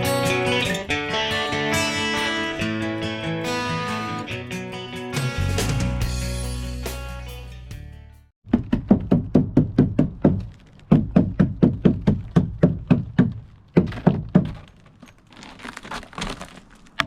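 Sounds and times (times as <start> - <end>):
acoustic guitar tune: 0.0 - 8.2.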